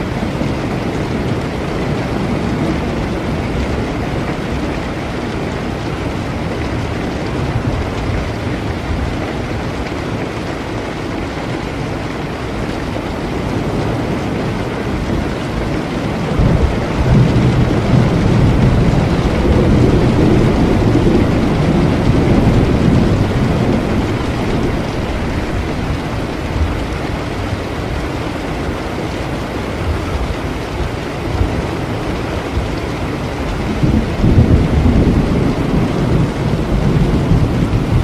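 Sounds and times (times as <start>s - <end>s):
heavy rain: 0.0s - 38.0s
rolling thunder: 13.4s - 28.2s, 29.8s - 38.0s.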